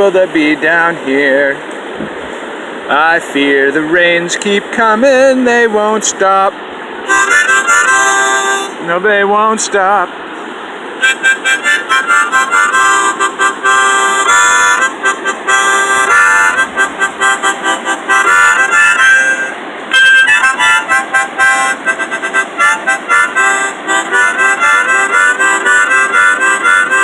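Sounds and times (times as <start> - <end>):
river rapids rushing: 0.0 - 27.0
harmonica playing quick notes: 7.0 - 8.9, 11.0 - 27.0.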